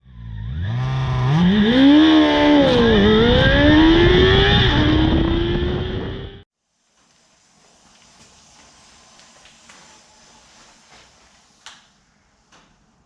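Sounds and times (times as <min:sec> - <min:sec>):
motorcycle engine accelerating: 0:00.0 - 0:06.5.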